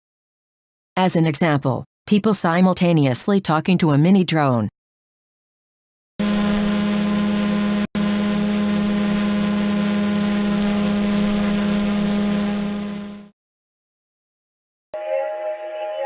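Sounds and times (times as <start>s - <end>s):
drone propellers humming: 6.2s - 13.2s.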